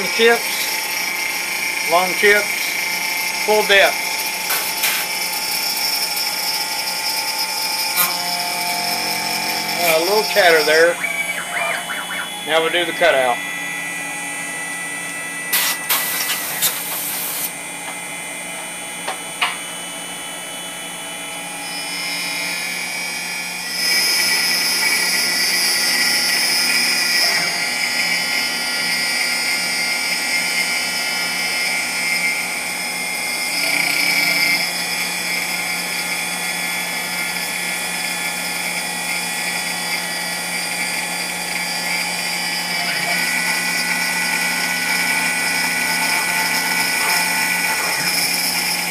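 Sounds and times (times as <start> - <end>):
router spindle cutting metal: 0.0 - 13.8, 23.6 - 48.9.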